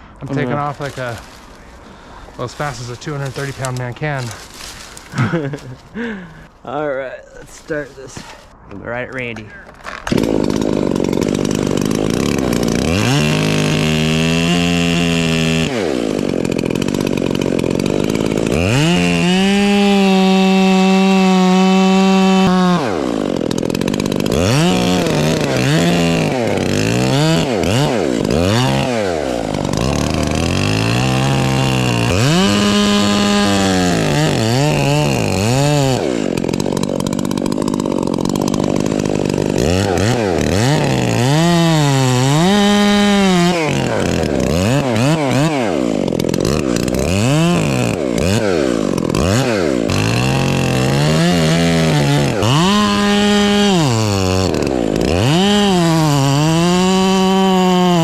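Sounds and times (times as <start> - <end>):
chainsaw cutting wood: 0.3 - 6.4, 9.7 - 58.0.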